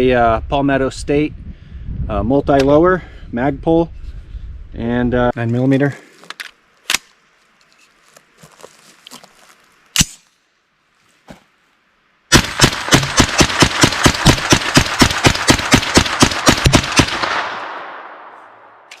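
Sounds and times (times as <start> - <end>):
rifle gunshots with echo: 12.3 - 18.9.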